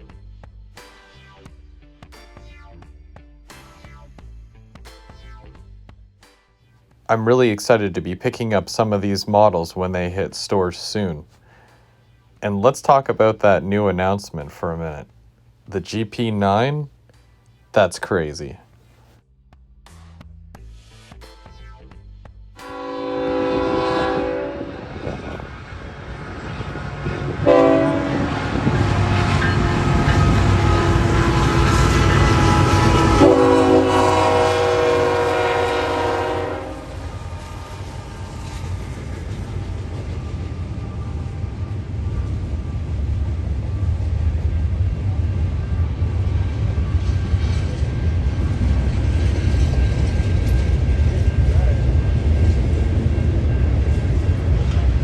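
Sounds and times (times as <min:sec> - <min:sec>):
train passing drone: 0:07.1 - 0:11.3, 0:22.6 - 0:55.0
train air horn: 0:22.6 - 0:25.4, 0:27.3 - 0:38.9.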